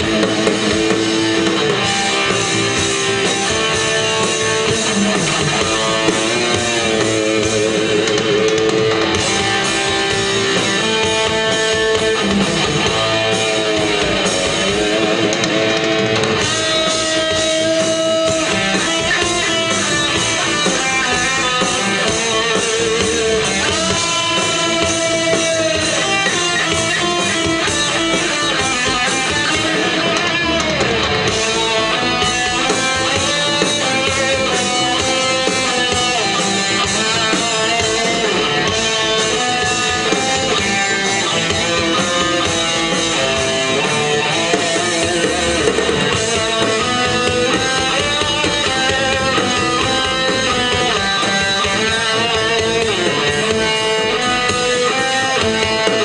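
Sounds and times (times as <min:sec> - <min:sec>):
electric guitar bends: 0:00.0 - 0:56.0
live rock band playing: 0:00.0 - 0:56.0.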